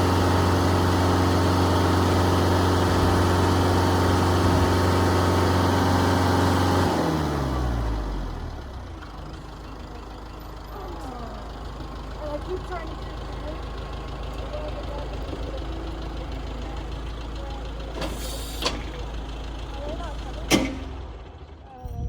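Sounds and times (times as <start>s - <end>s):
engine idling and winding down: 0.0s - 22.0s.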